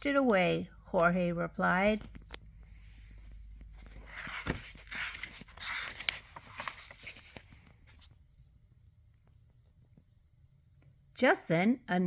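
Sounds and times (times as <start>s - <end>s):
book page turning: 1.9s - 8.2s.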